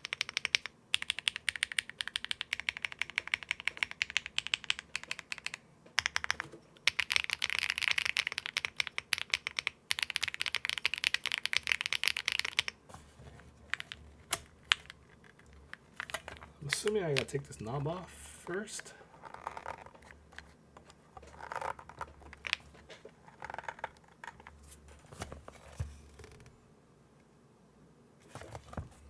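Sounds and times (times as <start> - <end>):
fast typing on mechanical keyboard: 0.0 - 12.8, 13.7 - 17.5, 19.2 - 20.5, 21.2 - 24.5.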